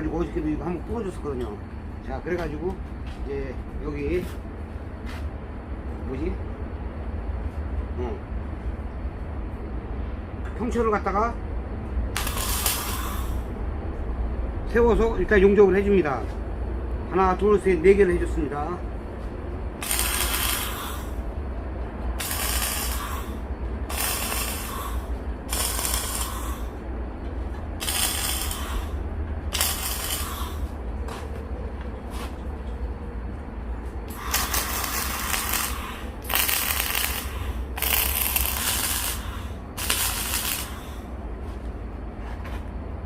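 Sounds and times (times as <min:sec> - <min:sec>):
low hum: 0:00.0 - 0:43.0
arc welding crackling hiss: 0:12.1 - 0:13.5, 0:19.8 - 0:21.3, 0:22.2 - 0:26.8, 0:27.8 - 0:30.8, 0:34.0 - 0:41.1.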